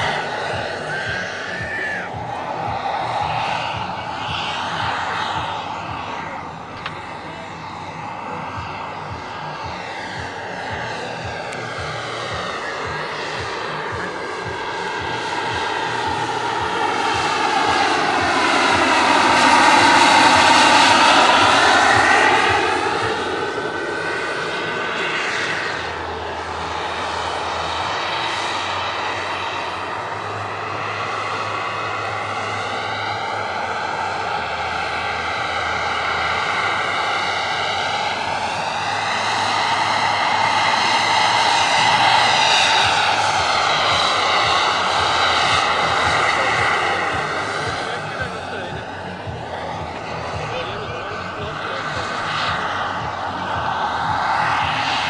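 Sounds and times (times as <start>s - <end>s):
model helicopter turbine whine: 0.0s - 55.0s.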